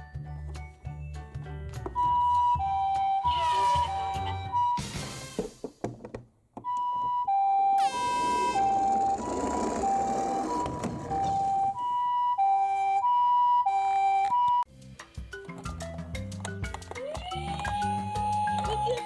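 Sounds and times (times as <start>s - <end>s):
two-tone siren: 2.0s - 4.9s, 6.6s - 14.7s.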